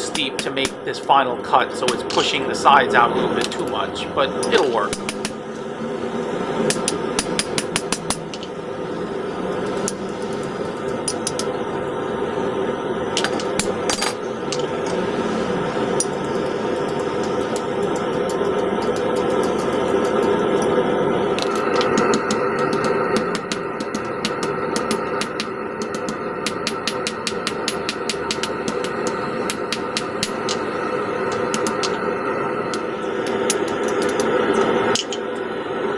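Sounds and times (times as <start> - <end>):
hammer striking hot steel: 0.0 - 1.1, 1.8 - 2.5, 3.4 - 5.6, 6.7 - 8.5, 9.6 - 11.6, 13.2 - 15.0, 16.0 - 32.1, 32.7 - 35.6
steady background noise: 0.0 - 35.9.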